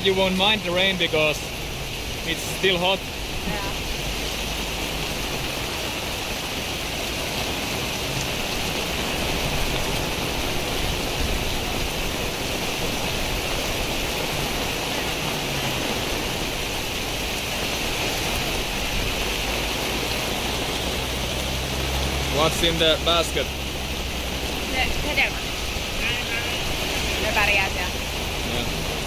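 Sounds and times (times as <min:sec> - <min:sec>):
steady rain pouring: 0:00.0 - 0:29.0.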